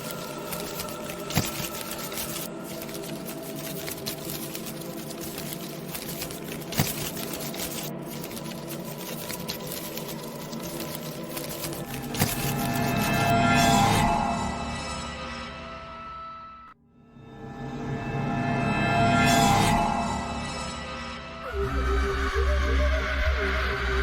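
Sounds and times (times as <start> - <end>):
dense crackle: 0.0 - 13.3.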